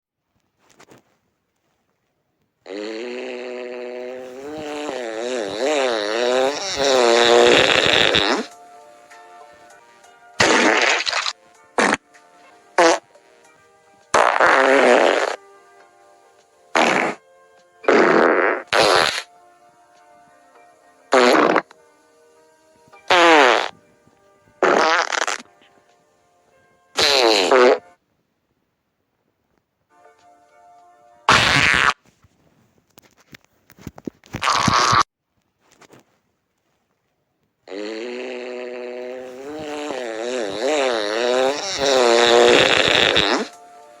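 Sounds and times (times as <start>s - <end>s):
faint background music: 0.2s - 34.4s, 35.4s - 44.0s
cartoon fart sounds: 2.7s - 8.6s, 10.4s - 12.2s, 12.8s - 13.2s, 14.1s - 15.4s, 16.7s - 17.2s, 17.8s - 19.3s, 21.1s - 21.8s, 23.0s - 23.8s, 24.6s - 25.5s, 27.0s - 27.9s, 31.3s - 32.0s, 34.3s - 35.1s, 37.7s - 43.6s.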